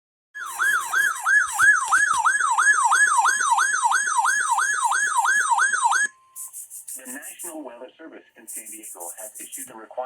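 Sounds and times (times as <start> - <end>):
electronic siren alert tone: 0.4 - 6.5.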